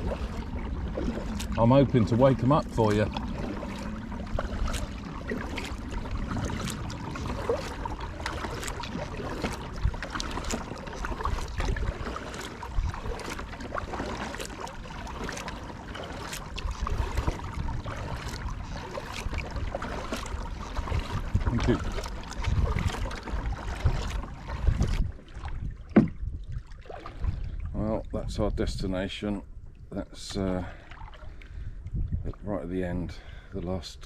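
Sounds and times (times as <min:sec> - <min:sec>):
water washing: 0:00.0 - 0:25.0
kayak paddle splashing: 0:00.0 - 0:27.7, 0:30.3 - 0:32.4.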